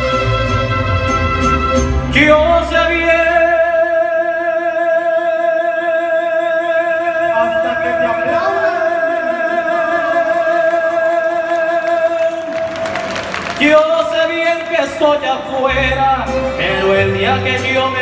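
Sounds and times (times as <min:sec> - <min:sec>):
mariachi band music: 0:00.0 - 0:18.0.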